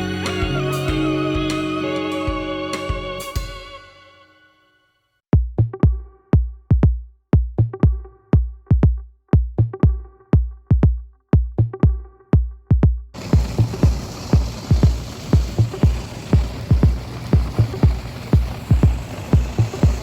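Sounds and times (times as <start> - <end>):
drum machine kick beat: 0.0 - 1.7, 2.3 - 3.8, 5.4 - 20.0
held synth tone: 0.0 - 4.7
hissing noise: 13.2 - 20.0.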